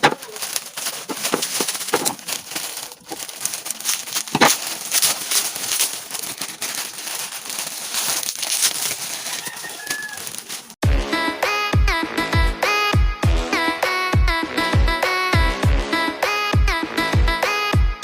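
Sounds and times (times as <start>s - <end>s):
packaging crinkling and rustling: 0.0s - 10.8s.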